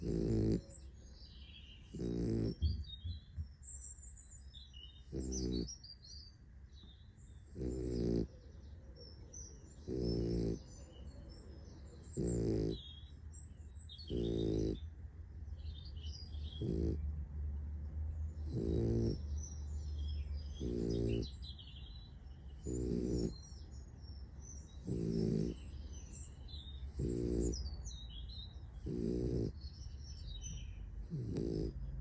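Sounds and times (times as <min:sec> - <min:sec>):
puppy snoring: 0:00.0 - 0:01.0, 0:01.8 - 0:04.2, 0:05.0 - 0:05.8, 0:07.4 - 0:08.4, 0:09.8 - 0:10.8, 0:12.0 - 0:13.1, 0:14.0 - 0:14.9, 0:16.2 - 0:17.1, 0:18.3 - 0:21.5, 0:22.5 - 0:23.6, 0:24.6 - 0:28.1, 0:28.7 - 0:29.8, 0:30.9 - 0:32.0
faint bird chirps: 0:00.0 - 0:14.9, 0:15.5 - 0:17.0, 0:18.4 - 0:32.0.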